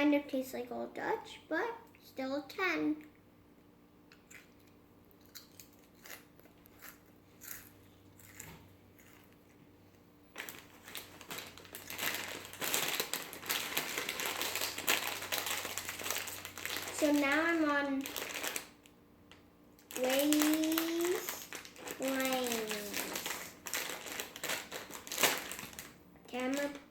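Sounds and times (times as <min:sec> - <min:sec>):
chips being chewed: 0:04.1 - 0:09.6
plastic bag crinkling: 0:10.3 - 0:18.9, 0:19.8 - 0:26.9.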